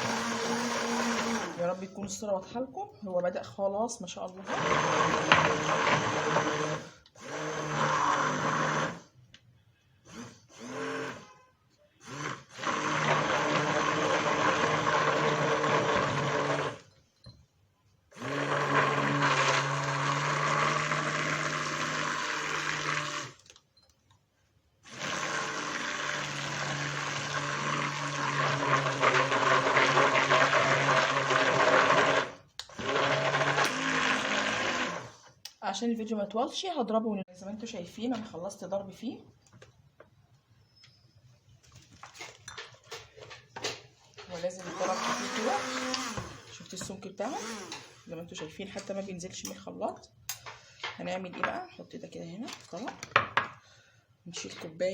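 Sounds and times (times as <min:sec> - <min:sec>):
electric blender whipping cream: 0:00.0 - 0:01.8, 0:04.4 - 0:09.1, 0:10.1 - 0:11.3, 0:12.0 - 0:16.9, 0:18.2 - 0:23.4, 0:24.9 - 0:35.2, 0:44.6 - 0:48.1.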